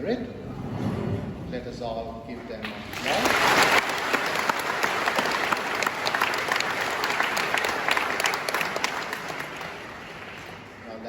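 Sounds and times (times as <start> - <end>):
crowd applauding: 2.5 - 11.0.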